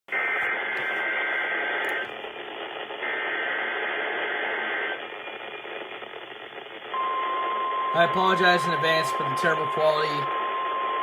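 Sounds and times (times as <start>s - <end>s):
radio static: 0.1s - 11.0s
two-tone digital data bursts: 7.0s - 11.0s.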